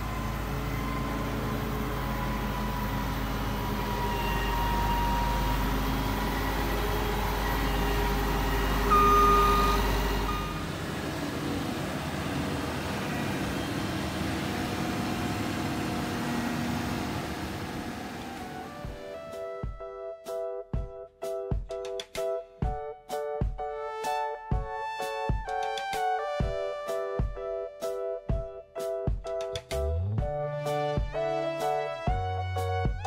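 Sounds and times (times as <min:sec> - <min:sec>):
combine harvester running: 0:00.0 - 0:19.1
short high beep: 0:08.8 - 0:10.7.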